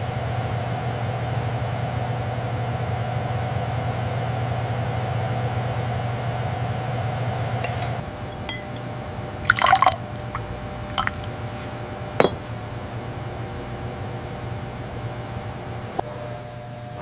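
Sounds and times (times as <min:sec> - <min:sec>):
liquid sounds: 0:09.4 - 0:12.8.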